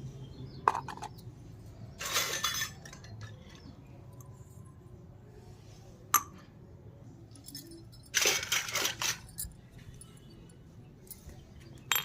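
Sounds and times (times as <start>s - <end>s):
toy pieces clinking and clattering: 1.9s - 3.7s, 7.3s - 9.6s.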